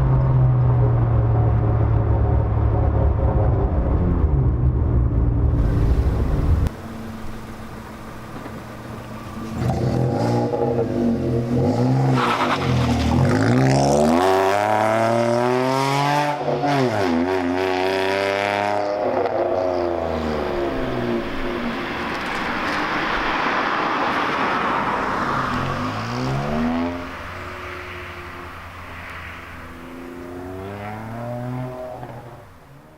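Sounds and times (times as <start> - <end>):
rushing noise: 0.9 - 15.2
car engine revving hard: 9.6 - 20.6.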